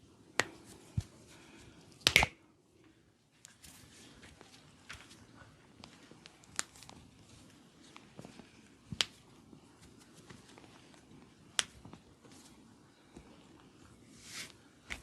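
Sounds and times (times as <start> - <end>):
hands rustling on skin: 3.5 - 13.3, 14.1 - 15.0.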